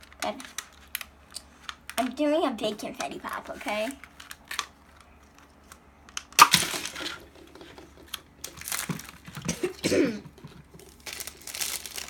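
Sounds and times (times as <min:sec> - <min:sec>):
plastic wrapper crinkling: 0:02.8 - 0:12.0.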